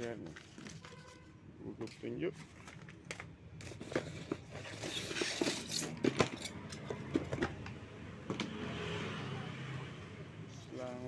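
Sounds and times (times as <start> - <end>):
parts clicking and knocking: 2.8 - 8.6.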